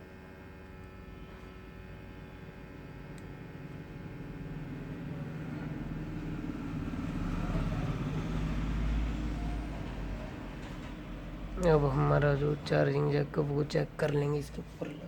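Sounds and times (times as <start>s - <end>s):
vehicle engine passing by: 5.0s - 12.7s.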